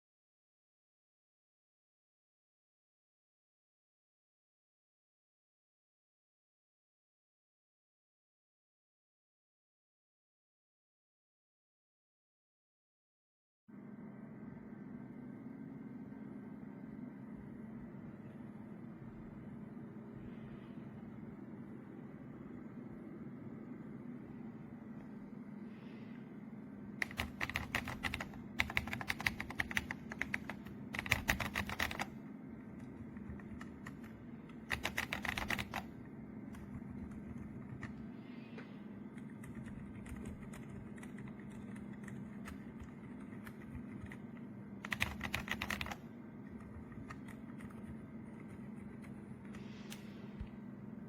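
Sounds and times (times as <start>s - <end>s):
low steady hum: 13.7s - 51.0s
keyboard typing: 27.0s - 38.1s, 39.1s - 50.5s.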